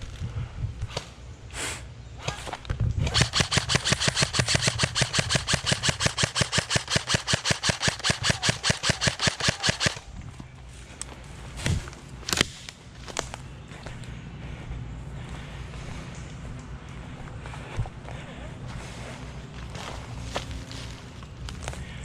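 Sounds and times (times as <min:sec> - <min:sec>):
airsoft rifle firing: 0:03.1 - 0:10.0.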